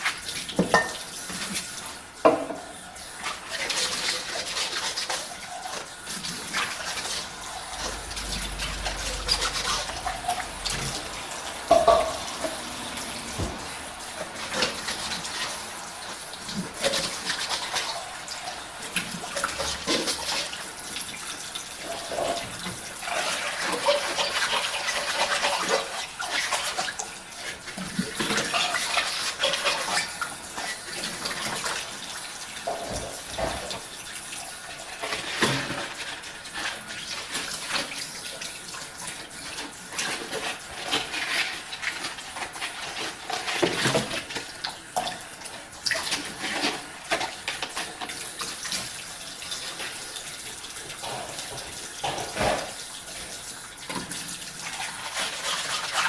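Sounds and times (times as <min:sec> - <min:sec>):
tap water splashing: 0:00.0 - 0:01.6, 0:02.2 - 0:02.8, 0:03.9 - 0:20.5, 0:49.8 - 0:56.0
dishes clinking: 0:00.6 - 0:01.1, 0:02.2 - 0:02.8, 0:06.8 - 0:15.5, 0:50.9 - 0:52.9.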